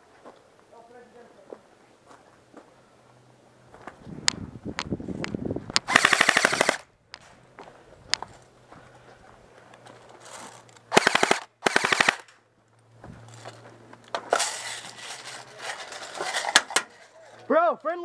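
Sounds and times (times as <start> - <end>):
airsoft rifle firing bursts: 5.8 - 6.9, 10.9 - 12.3.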